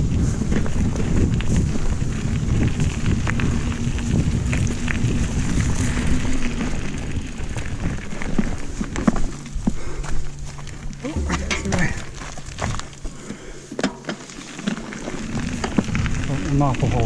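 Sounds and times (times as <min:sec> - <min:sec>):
wind buffeting microphone: 0:00.0 - 0:13.1
road rumble: 0:00.0 - 0:17.0.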